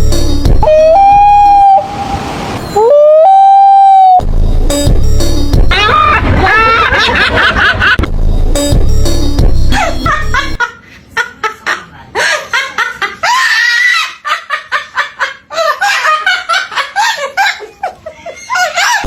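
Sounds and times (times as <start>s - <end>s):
music: 0.0s - 1.8s, 4.2s - 10.6s.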